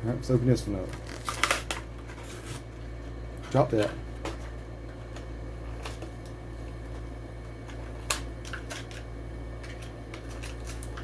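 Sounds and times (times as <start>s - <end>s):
steady low hum: 0.0s - 11.0s
package clicks and crinkling: 0.9s - 1.9s, 8.0s - 11.0s.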